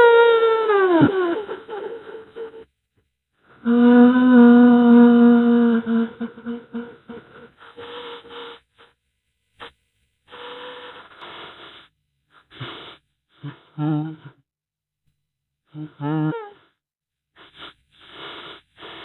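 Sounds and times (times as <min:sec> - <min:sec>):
person humming a held tone: 0:00.0 - 0:02.7, 0:03.6 - 0:08.4, 0:13.8 - 0:14.4, 0:15.7 - 0:16.7
breathy vocal bursts: 0:03.5 - 0:08.6.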